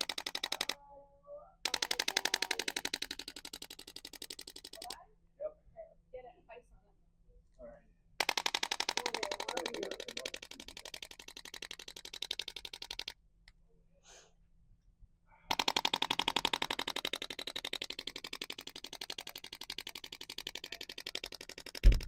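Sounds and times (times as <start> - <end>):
rapid instrument tapping clicks: 0.0 - 0.8, 1.7 - 5.0, 8.2 - 13.2, 15.5 - 22.0.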